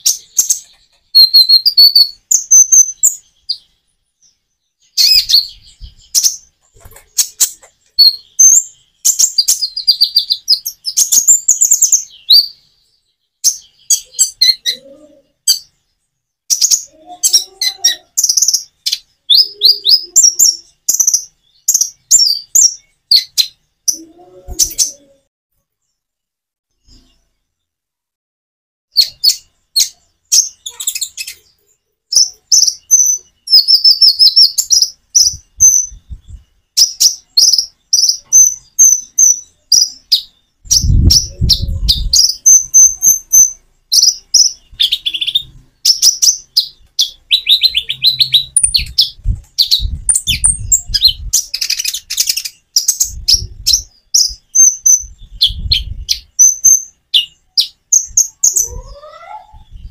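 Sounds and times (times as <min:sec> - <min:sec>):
bird twittering chirps: 0:00.0 - 0:26.0, 0:28.9 - 0:59.9.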